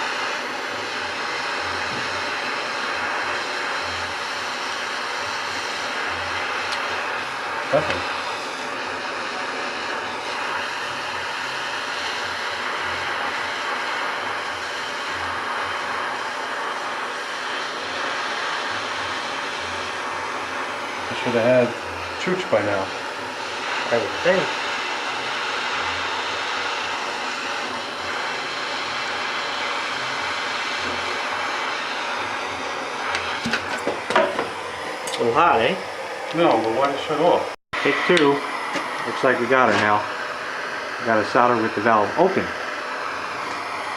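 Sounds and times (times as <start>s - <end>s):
gas torch flame hissing: 0.0s - 43.9s.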